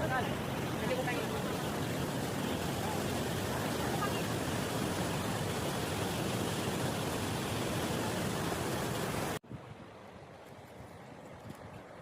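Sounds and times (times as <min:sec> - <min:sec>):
waterfall roaring: 0:00.0 - 0:09.4
rushing water: 0:00.0 - 0:12.0.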